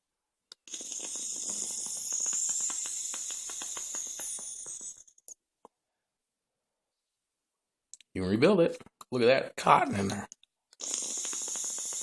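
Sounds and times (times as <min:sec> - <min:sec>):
vape coil hissing and crackling: 0:00.6 - 0:05.2, 0:10.8 - 0:12.0.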